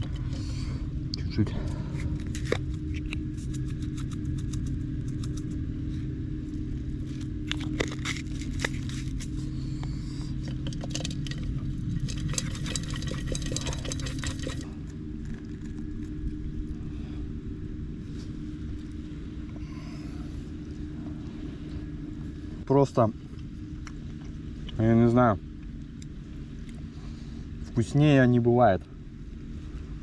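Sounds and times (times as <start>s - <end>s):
low motor drone: 0.0s - 30.0s
spoon scraping metal pot: 12.1s - 14.6s.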